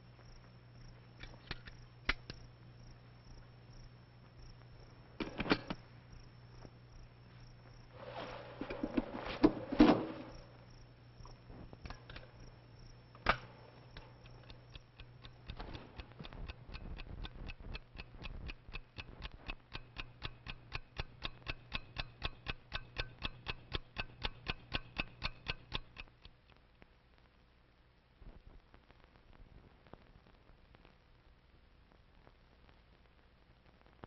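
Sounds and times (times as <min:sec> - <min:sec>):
regular ticking: 0:10.3 - 0:26.6.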